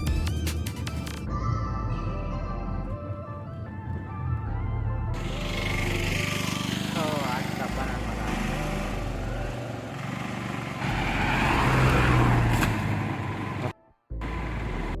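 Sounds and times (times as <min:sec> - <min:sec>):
car engine running: 0:04.8 - 0:15.0.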